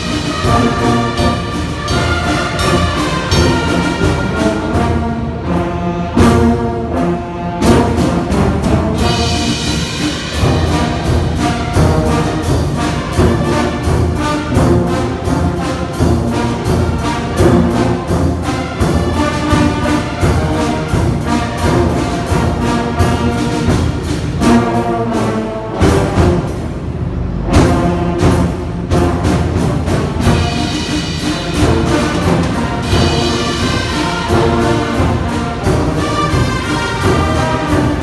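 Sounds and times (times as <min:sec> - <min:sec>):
steady drum beat: 0:00.0 - 0:05.6, 0:07.6 - 0:38.0
brass band playing: 0:00.0 - 0:38.0.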